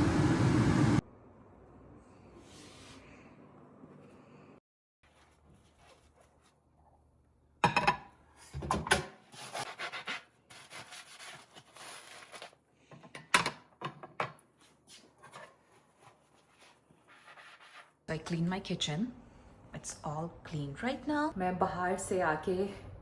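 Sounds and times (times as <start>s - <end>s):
rubbing and scrubbing: 15.2s - 18.0s.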